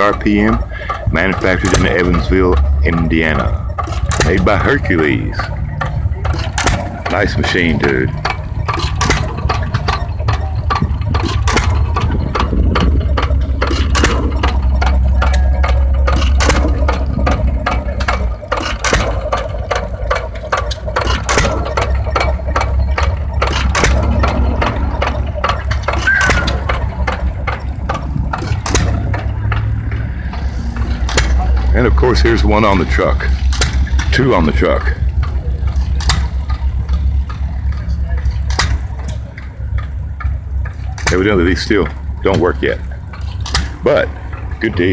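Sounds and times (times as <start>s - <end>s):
engine pops and clicks: 0.0s - 44.9s
stationary engines rumbling: 0.0s - 44.9s.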